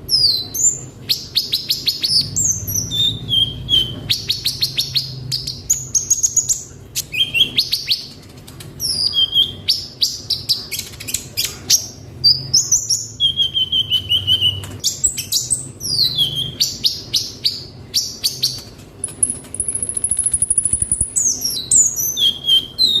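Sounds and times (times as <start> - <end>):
bird singing chirps and trills: 0.0 - 8.2, 8.8 - 18.6, 19.2 - 23.0.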